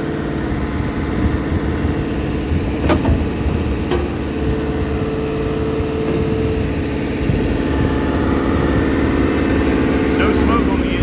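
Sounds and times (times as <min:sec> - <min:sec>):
diesel engine running: 0:00.0 - 0:11.0
steady whine: 0:06.1 - 0:11.0.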